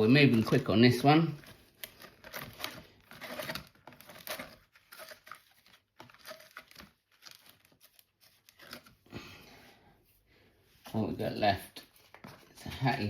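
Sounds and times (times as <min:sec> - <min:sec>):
plastic packaging crinkling: 0:00.1 - 0:09.1.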